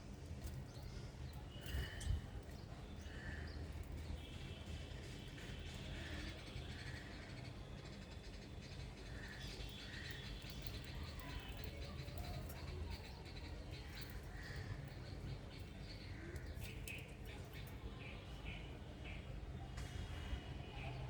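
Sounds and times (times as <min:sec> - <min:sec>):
small birds chirping: 0:06.0 - 0:19.4.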